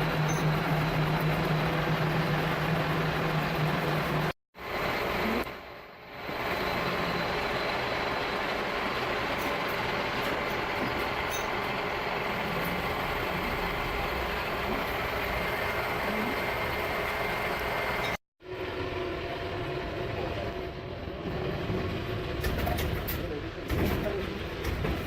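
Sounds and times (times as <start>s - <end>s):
machinery running: 0.0s - 22.6s.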